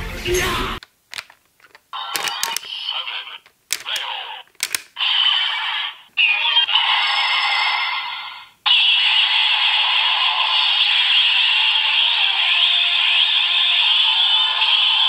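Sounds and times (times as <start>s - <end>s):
plastic clicks: 0.8s - 5.0s
toy speaker voice and effects: 1.9s - 15.0s.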